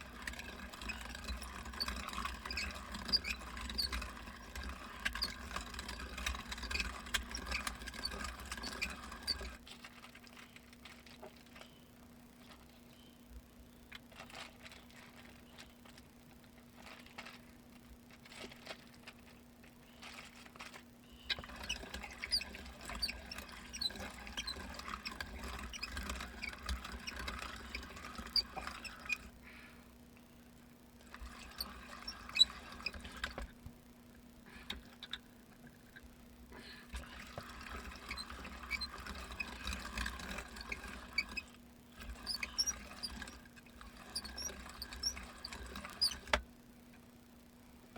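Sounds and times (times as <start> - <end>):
hand-cranked meat grinder turning: 0.0 - 9.6, 20.6 - 29.4, 31.0 - 33.6, 36.9 - 46.4
small squeaks and clicks: 0.0 - 29.4, 31.0 - 33.6, 34.6 - 36.1, 36.9 - 47.1.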